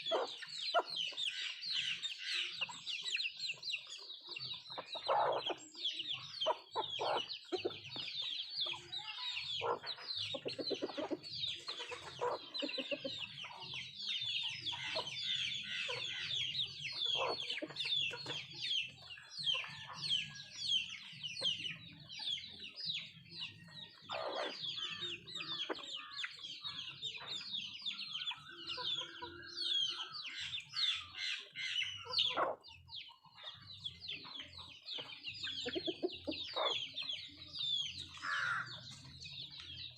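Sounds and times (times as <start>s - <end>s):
chickens clucking: 0.0s - 39.9s
high chirping: 0.0s - 39.9s
drawn-out chicken call: 38.0s - 39.2s.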